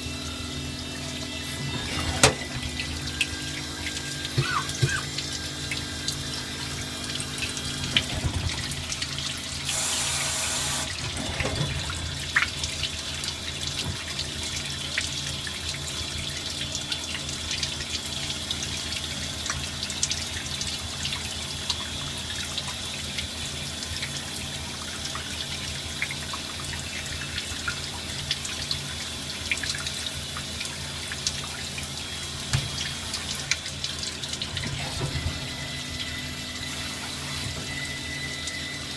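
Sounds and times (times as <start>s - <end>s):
low machine hum: 0.0s - 17.9s
coolant splashing: 0.0s - 38.9s.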